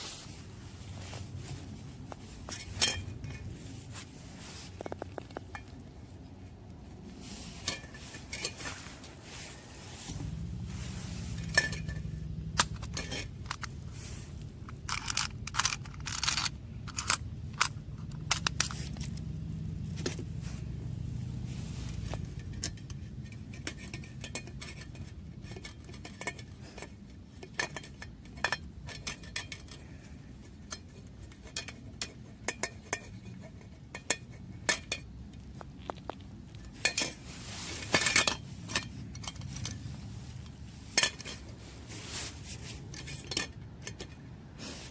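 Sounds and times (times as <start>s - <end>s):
low rumble: 9.0s - 16.0s
metal utensils clinking on cookware: 40.9s - 41.4s.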